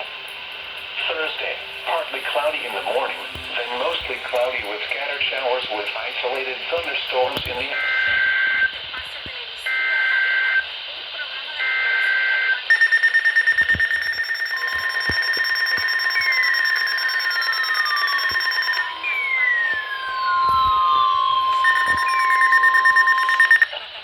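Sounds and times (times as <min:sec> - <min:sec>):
high pulsing alarm beep: 0:01.0 - 0:08.7, 0:11.6 - 0:23.8
steady single alarm tone: 0:11.6 - 0:23.7
tones sweeping down in pitch: 0:13.3 - 0:23.7.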